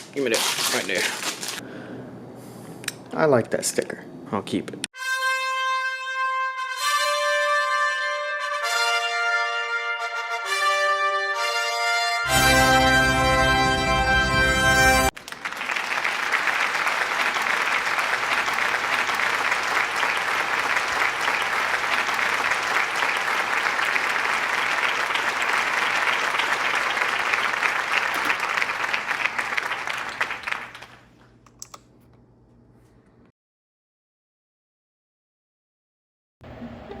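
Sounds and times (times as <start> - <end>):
crowd applauding: 15.0 - 31.1.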